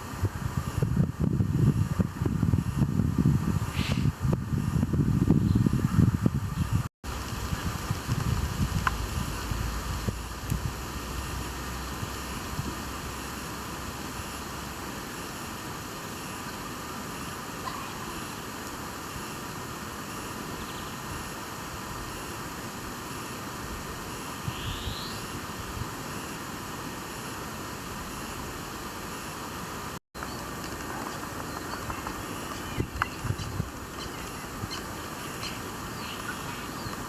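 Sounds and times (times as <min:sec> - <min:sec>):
outdoor nature ambience hiss: 0:00.0 - 0:37.0
low rumble: 0:07.2 - 0:12.7.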